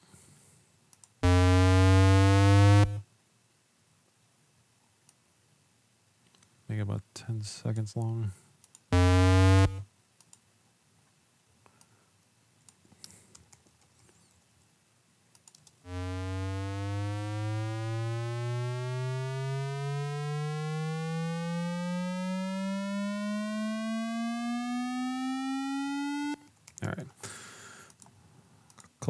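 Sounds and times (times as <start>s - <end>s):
synthesizer tone gliding upward: 1.2s - 3.0s, 9.0s - 9.8s, 15.9s - 26.4s
keyboard and mouse clicks: 15.3s - 15.8s, 26.5s - 26.8s.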